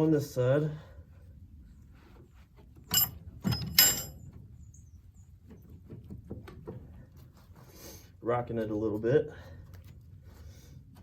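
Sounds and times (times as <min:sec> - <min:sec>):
metallic scraping creaks: 0:02.8 - 0:04.3.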